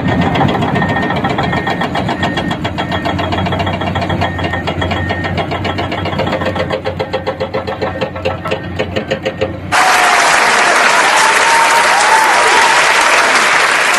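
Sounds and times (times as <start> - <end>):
heavy diesel engine running: 0.0 - 9.8
loud applause: 9.7 - 13.9.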